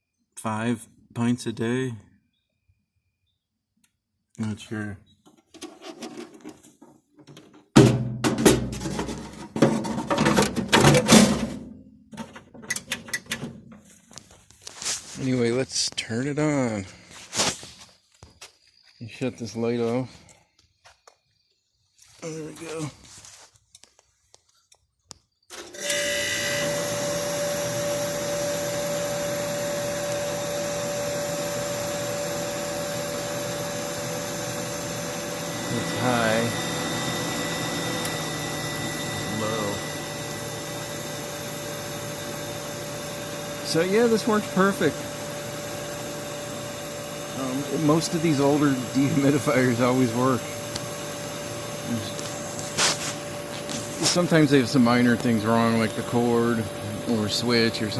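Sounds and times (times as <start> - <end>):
knocking and rattling: 5.3 - 13.8
loud thump: 7.8 - 8.8
dehumidifier fan rushing air: 26.9 - 57.9.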